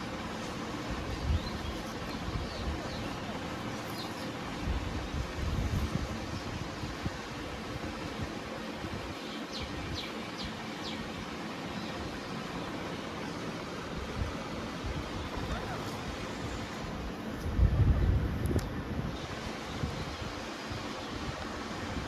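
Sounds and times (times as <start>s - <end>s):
wind rumble on microphone: 0.8s - 3.3s, 4.5s - 10.6s, 13.9s - 22.0s
wind noise: 0.9s - 3.3s, 4.6s - 10.1s, 13.9s - 22.0s.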